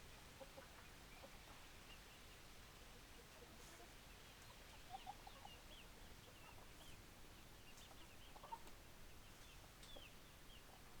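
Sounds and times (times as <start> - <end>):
chickens clucking: 4.4 - 7.0, 7.7 - 8.8.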